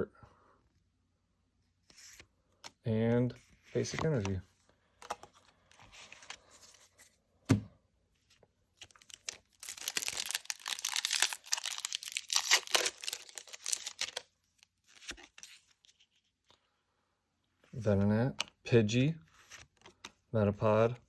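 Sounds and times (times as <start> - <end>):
foil wrapper tearing and crinkling: 8.9 - 14.3.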